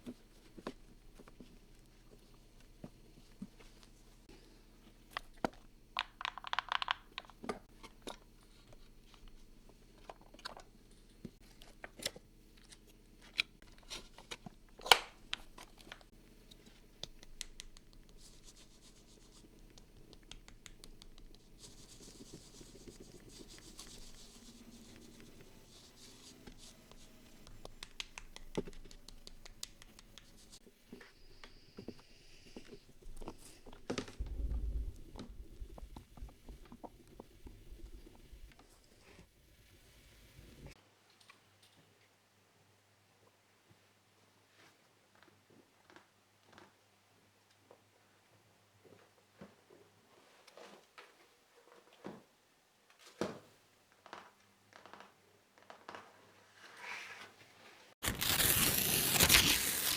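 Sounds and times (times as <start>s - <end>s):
scratching and rubbing on paper: 18.0s - 30.6s, 58.0s - 59.9s
sharp clicks and taps: 26.9s - 30.6s.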